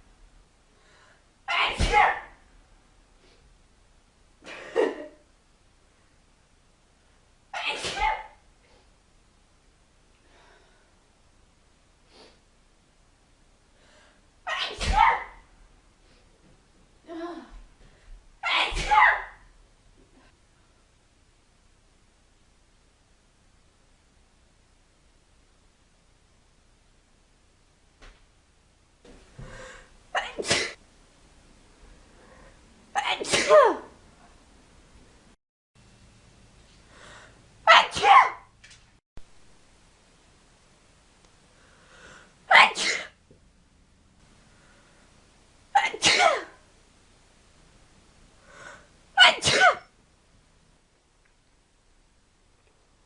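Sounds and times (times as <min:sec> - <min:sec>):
person sneezing: 0:01.5 - 0:02.3, 0:07.6 - 0:08.4, 0:14.5 - 0:15.4, 0:18.4 - 0:19.4, 0:29.4 - 0:30.8, 0:33.0 - 0:33.9, 0:37.7 - 0:38.4, 0:42.5 - 0:43.2, 0:45.8 - 0:46.6, 0:49.2 - 0:49.9
drawn-in breath: 0:41.5 - 0:42.4, 0:48.4 - 0:48.9.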